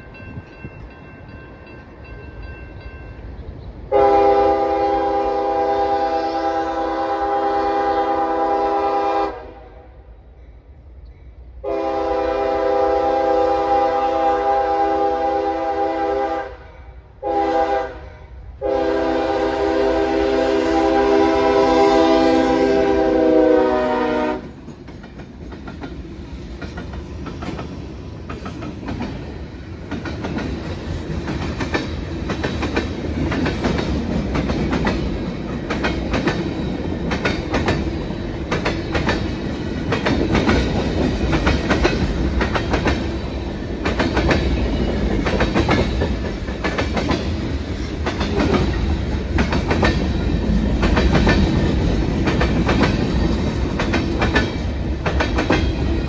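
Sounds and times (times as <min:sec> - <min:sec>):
train rumble: 0:00.0 - 0:56.0
train wheels clacking over rail joints: 0:24.3 - 0:56.0.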